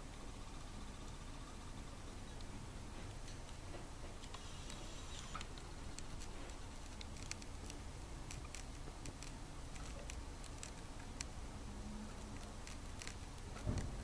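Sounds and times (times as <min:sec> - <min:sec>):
low steady hum: 0:00.0 - 0:14.0
budgies clicking and ticking: 0:04.2 - 0:11.4.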